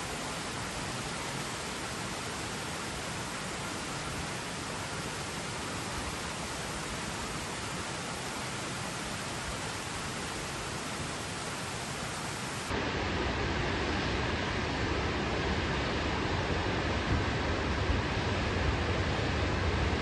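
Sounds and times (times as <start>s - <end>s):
waterfall rushing: 0.0s - 12.7s.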